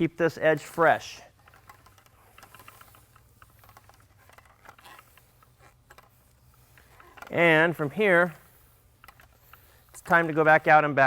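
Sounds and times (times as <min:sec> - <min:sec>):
paint roller crackling ticks: 0:00.0 - 0:11.0.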